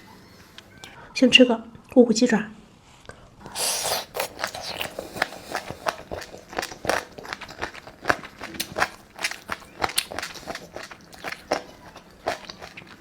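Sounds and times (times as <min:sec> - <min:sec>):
chewing crunchy chicken foot: 0:03.4 - 0:13.0.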